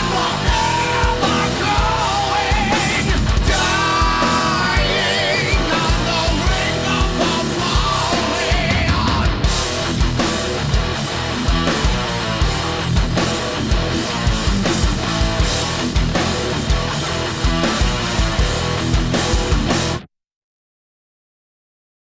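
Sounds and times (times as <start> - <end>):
person singing: 0.0 - 9.4
distorted electric guitars: 0.0 - 20.1
drums: 0.0 - 20.1.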